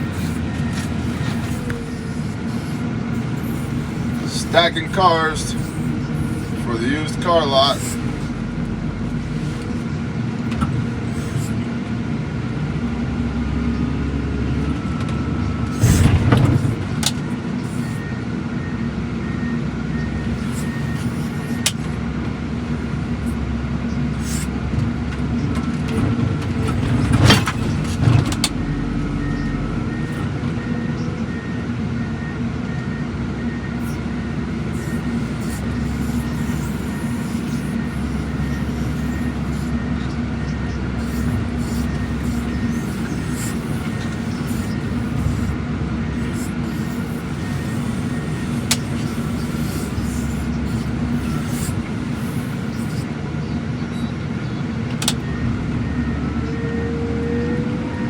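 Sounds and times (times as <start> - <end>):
diesel engine running under load: 0.0 - 58.0
reversing alarm beeping: 17.6 - 21.8, 27.2 - 45.5.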